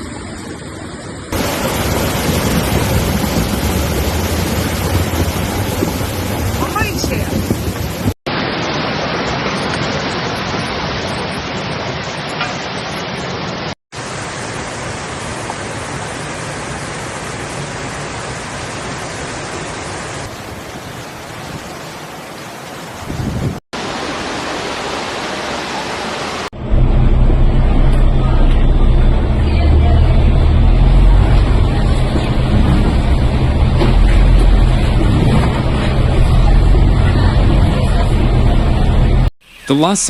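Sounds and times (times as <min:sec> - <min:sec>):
heavy rain rushing: 0:00.0 - 0:40.0
loud low rumble: 0:26.6 - 0:39.3.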